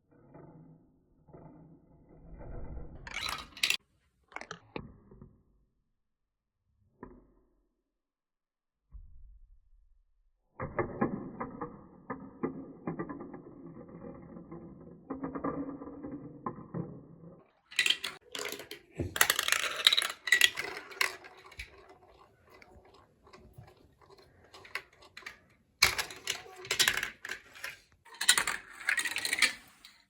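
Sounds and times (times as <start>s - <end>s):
marbles clattering down plastic run: 3.1s - 3.8s, 10.9s - 30.0s.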